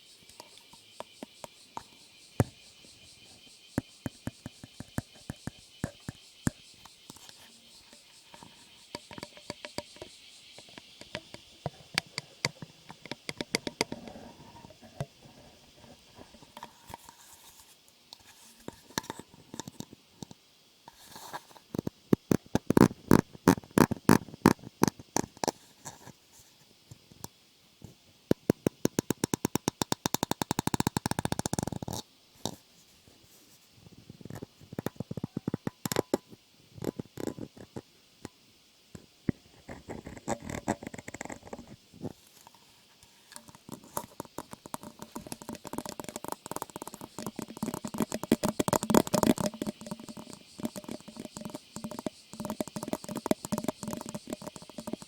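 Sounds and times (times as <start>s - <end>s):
sharp clicks and taps: 3.8s - 7.5s, 8.3s - 14.2s, 18.2s - 21.0s, 21.7s - 25.6s, 28.3s - 32.6s, 34.3s - 36.2s, 43.3s - 55.0s
fast run of clicks: 28.3s - 32.0s, 43.3s - 55.0s.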